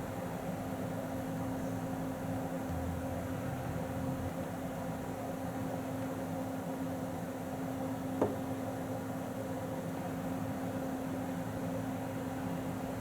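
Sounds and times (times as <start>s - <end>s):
steady low hum: 1.3s - 6.3s.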